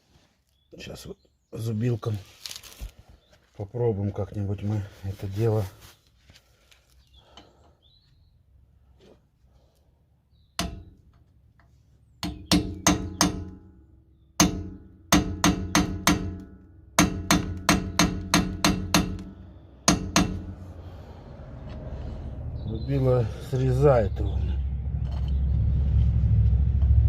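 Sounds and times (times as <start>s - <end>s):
hammer striking metal chisel: 10.6s - 11.0s, 12.2s - 13.6s, 14.4s - 20.6s.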